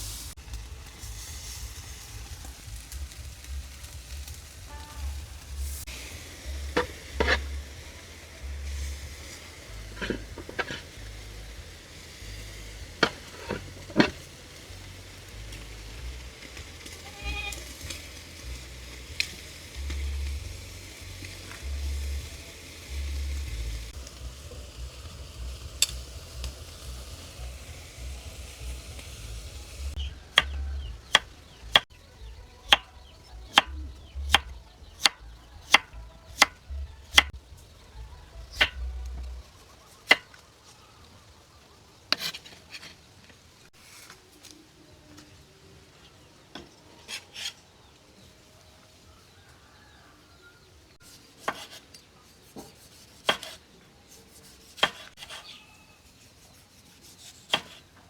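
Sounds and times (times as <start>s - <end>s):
food sizzling in a pan: 0.0s - 37.8s
utensil knocking: 13.0s - 14.2s
knife chopping on a board: 33.5s - 37.3s, 51.4s - 51.8s, 52.5s - 53.6s, 54.7s - 55.4s, 57.5s - 57.8s.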